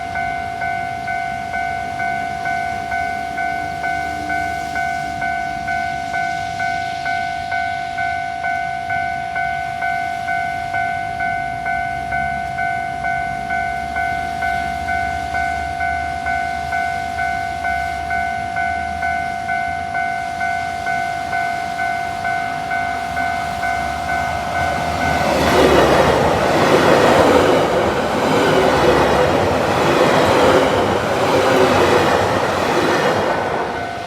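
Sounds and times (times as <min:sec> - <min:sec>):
train rushing and clattering: 0:09.4 - 0:34.0.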